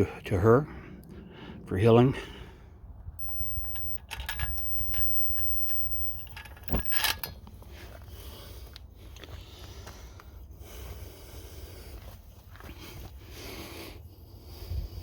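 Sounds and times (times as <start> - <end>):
low steady rumble: 2.3 - 9.4.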